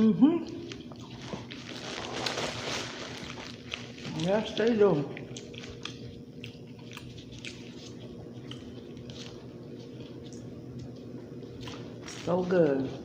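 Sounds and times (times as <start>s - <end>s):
steady background hum: 0.0s - 13.0s
person chewing and eating: 0.5s - 13.0s
wet mouth clicks and smacks: 5.1s - 9.4s.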